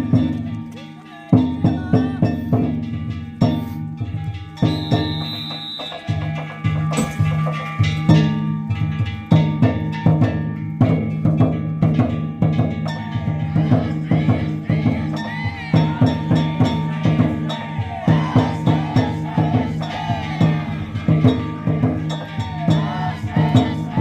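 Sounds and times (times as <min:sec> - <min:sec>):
metal hand gongs: 0:00.0 - 0:13.4
taiko drum beating: 0:00.0 - 0:24.0
low ring: 0:02.3 - 0:18.5.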